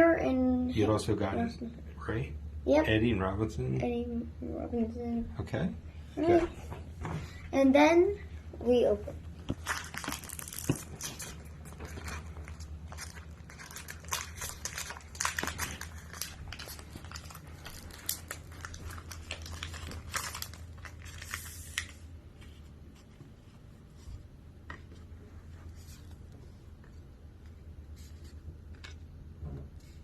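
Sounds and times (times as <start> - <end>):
steady low hum: 0.0 - 30.0
wrapper tearing and crinkling: 9.5 - 22.1.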